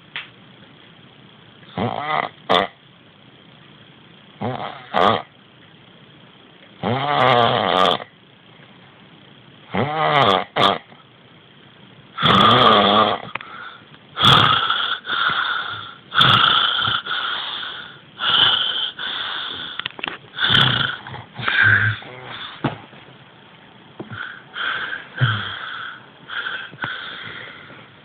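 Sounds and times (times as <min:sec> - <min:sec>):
man snoring heavily: 0:01.7 - 0:02.8, 0:04.4 - 0:05.3, 0:06.8 - 0:08.1, 0:09.7 - 0:10.9, 0:12.2 - 0:13.3, 0:14.2 - 0:19.8, 0:20.4 - 0:22.6, 0:24.1 - 0:27.6.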